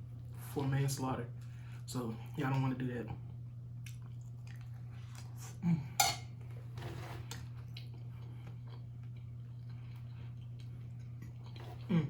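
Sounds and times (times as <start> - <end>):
cutlery clinking on a plate: 6.0 - 6.3.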